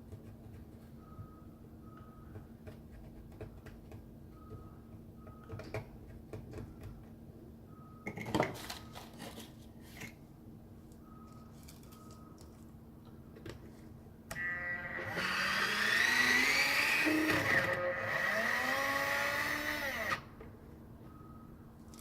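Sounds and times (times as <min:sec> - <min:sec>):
cigarette rolling machine humming: 0:14.3 - 0:20.3.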